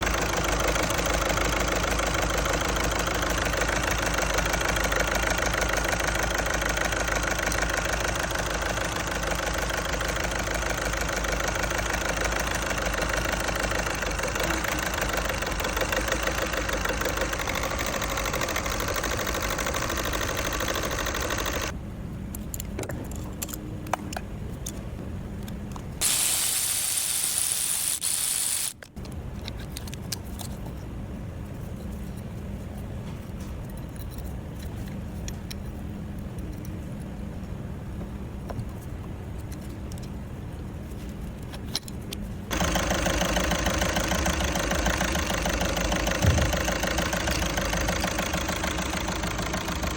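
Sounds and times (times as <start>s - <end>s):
diesel engine idling: 0.0s - 21.7s, 42.5s - 49.9s
loud hiss: 26.0s - 28.8s.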